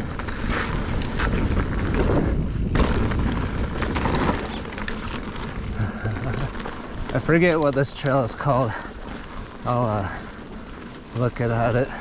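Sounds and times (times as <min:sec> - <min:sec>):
bike knocks and clatter: 0:00.0 - 0:08.9
tyres rolling over dirt and rock: 0:00.0 - 0:12.0
wind buffeting microphone: 0:00.0 - 0:12.0.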